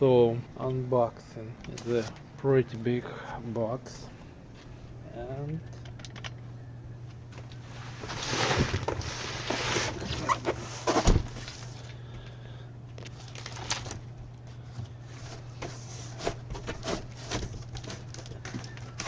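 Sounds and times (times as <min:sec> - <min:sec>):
steady low hum: 0:00.0 - 0:19.0
cardboard rustling and scraping: 0:07.6 - 0:11.8, 0:14.7 - 0:19.0.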